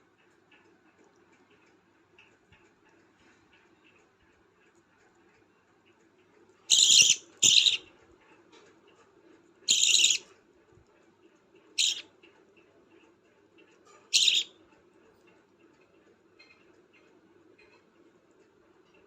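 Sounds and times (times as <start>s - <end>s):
budgerigar chick begging calls: 6.7s - 7.8s, 9.7s - 10.2s, 11.8s - 12.0s, 14.2s - 14.5s.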